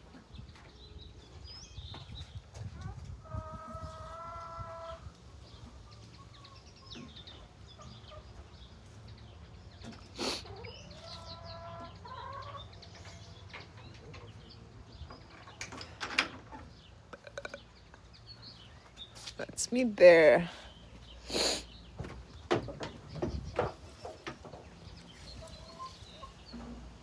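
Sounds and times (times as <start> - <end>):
chickens clucking: 1.9 - 19.0, 20.9 - 27.0
drawn-out chicken call: 3.2 - 5.3, 10.2 - 12.8, 25.2 - 26.5.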